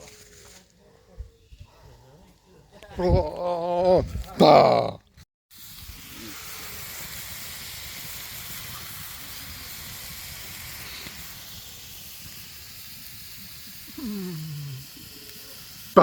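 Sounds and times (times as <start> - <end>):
steady hiss: 5.5 - 16.0.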